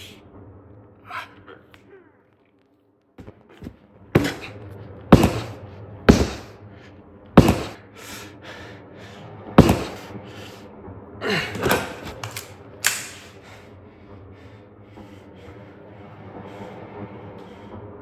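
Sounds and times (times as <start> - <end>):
loud thumps: 4.2 - 6.5, 7.4 - 7.8, 9.6 - 10.1.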